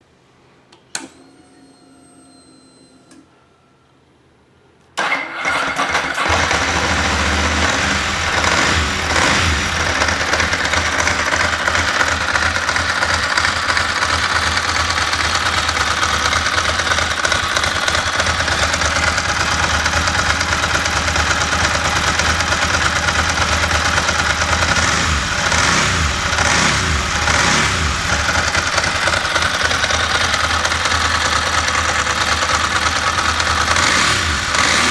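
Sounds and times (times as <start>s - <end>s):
click: 0.7s - 1.3s, 2.4s - 3.4s
motorcycle engine idling: 6.2s - 34.9s.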